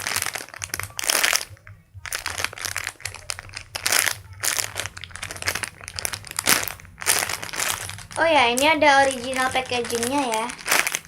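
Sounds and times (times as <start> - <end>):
foam toy crinkling: 0.0 - 11.0.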